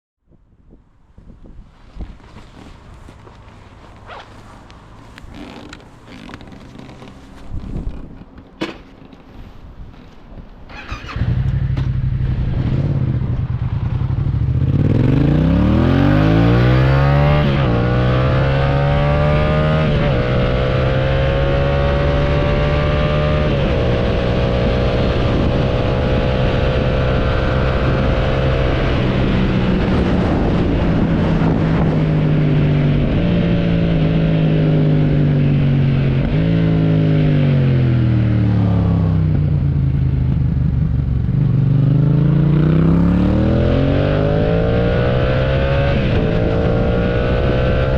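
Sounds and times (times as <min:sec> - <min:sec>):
motorcycle engine accelerating: 0:10.7 - 0:47.9.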